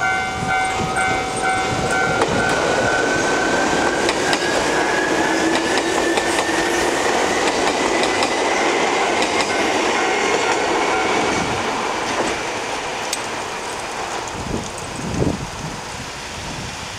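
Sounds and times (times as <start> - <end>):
train wheels clattering over rail joints: 0.7 - 11.4.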